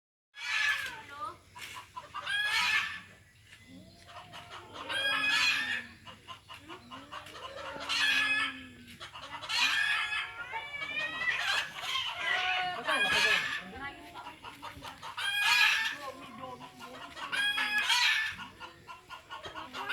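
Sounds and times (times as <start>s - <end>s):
cats yowling in a fight: 9.6s - 13.6s.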